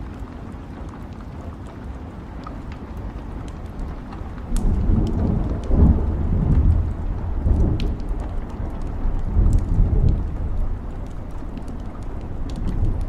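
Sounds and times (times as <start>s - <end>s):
fire crackling and popping: 0.0s - 13.0s
low rumble: 4.4s - 13.0s.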